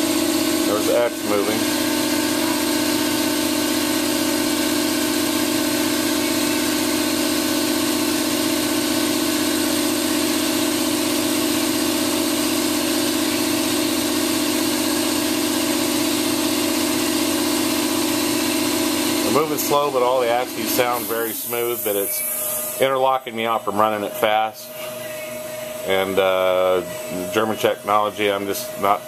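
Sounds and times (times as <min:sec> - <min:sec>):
milling machine humming: 0:00.0 - 0:29.0.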